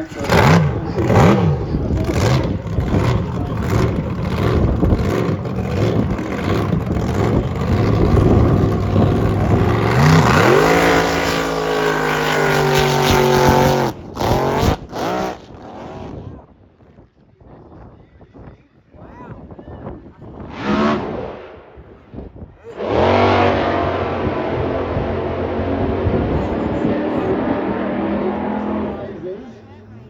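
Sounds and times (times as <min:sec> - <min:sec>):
boat engine running loud: 0:00.0 - 0:14.5, 0:22.8 - 0:29.2.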